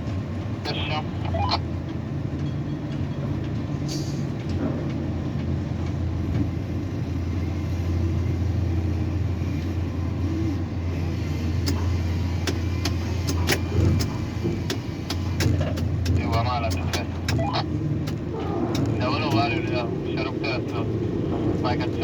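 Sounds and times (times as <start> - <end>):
crane machinery humming: 0.0 - 22.0
sharp clicks: 12.4 - 19.8.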